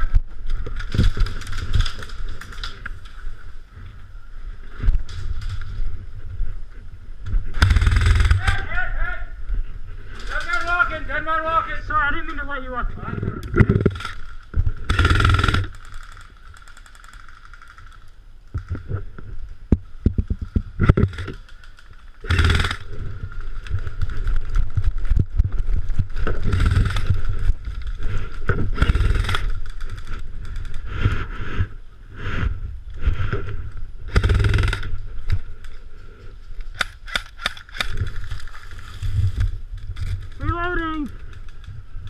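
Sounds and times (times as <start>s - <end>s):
loud gusts of noise: 4.8s - 12.0s.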